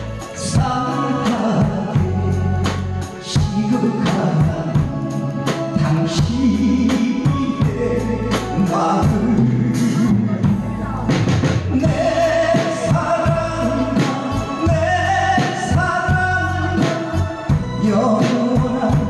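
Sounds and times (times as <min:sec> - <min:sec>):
backing track melody: 0:00.0 - 0:19.0
drum kit played live: 0:00.0 - 0:19.0.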